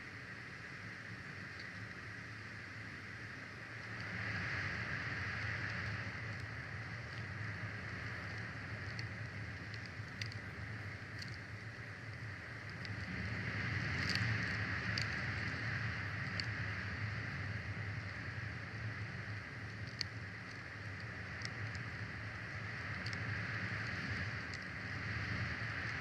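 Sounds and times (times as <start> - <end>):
faint ticks: 0.0 - 26.0
steady rushing background noise: 0.0 - 26.0.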